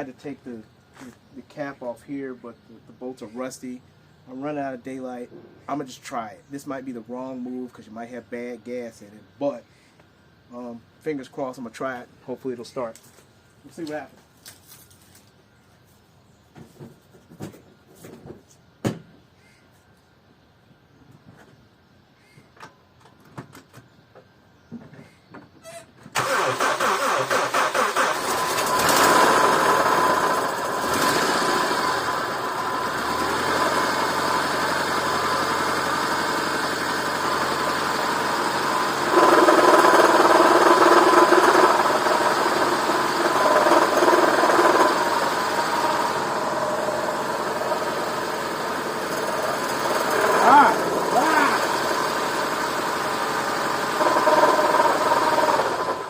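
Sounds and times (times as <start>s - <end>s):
car engine starting and running: 26.1s - 56.0s.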